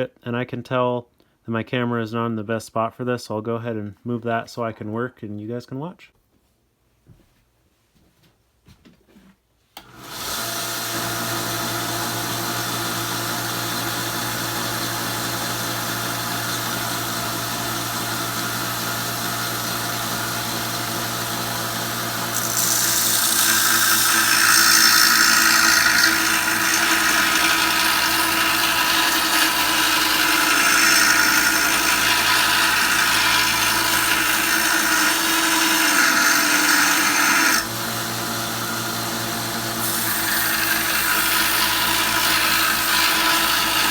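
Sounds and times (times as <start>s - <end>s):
belt sander motor humming: 9.8s - 43.9s
steel blade grinding on belt: 22.2s - 37.7s, 39.7s - 43.9s.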